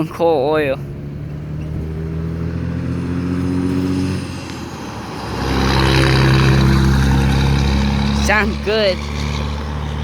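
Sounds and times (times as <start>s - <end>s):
passing vehicle engines: 0.0s - 10.0s.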